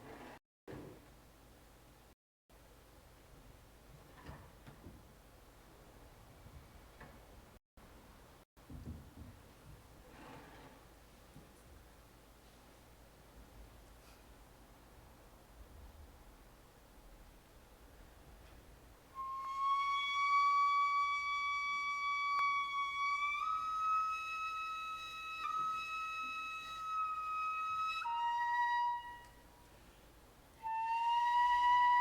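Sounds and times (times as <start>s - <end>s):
bamboo flute playing: 19.1s - 29.5s, 30.6s - 32.0s.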